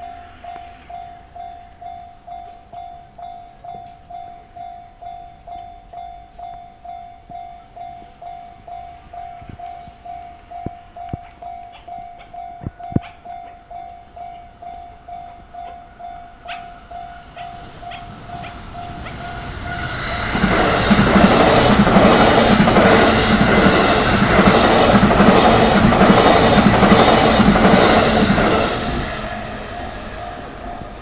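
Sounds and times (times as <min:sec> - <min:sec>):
level crossing bell: 0:00.0 - 0:19.6
electric train approaching: 0:00.0 - 0:31.0.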